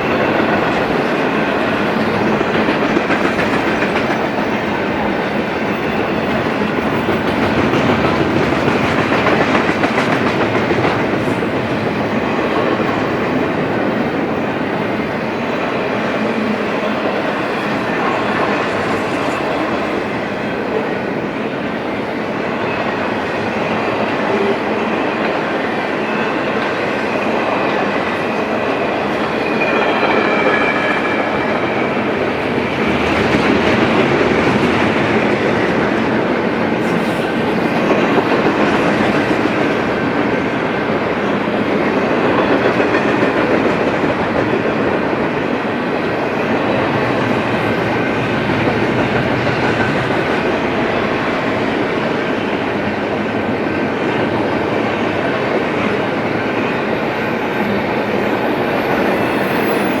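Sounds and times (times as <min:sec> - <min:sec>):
freight train rumbling: 0:00.0 - 1:00.0
faint high squeal: 0:57.1 - 1:00.0.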